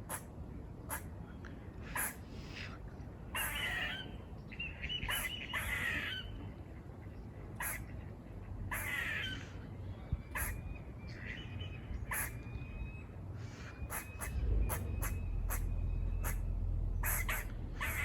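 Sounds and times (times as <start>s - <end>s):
squirrel raspy buzzing calls: 1.9s - 2.2s, 3.3s - 4.1s, 5.0s - 6.3s, 7.6s - 7.9s, 8.7s - 9.4s, 10.3s - 10.6s, 12.0s - 12.4s, 13.9s - 18.0s
squirrel sharp barks: 10.4s - 10.6s, 17.0s - 18.0s.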